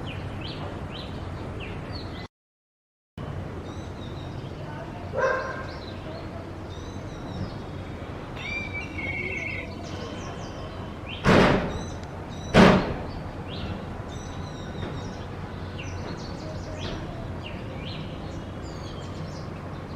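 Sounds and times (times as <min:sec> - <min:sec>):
small birds chirping: 0:00.0 - 0:02.3, 0:03.2 - 0:19.9
loud thumps: 0:11.2 - 0:11.9, 0:12.5 - 0:13.2.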